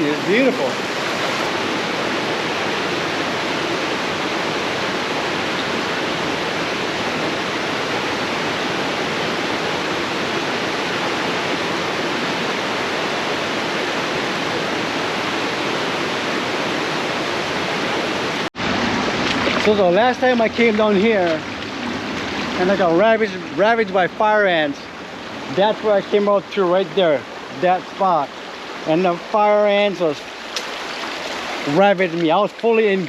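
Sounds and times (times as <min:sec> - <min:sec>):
stream water flowing: 0:00.0 - 0:33.0.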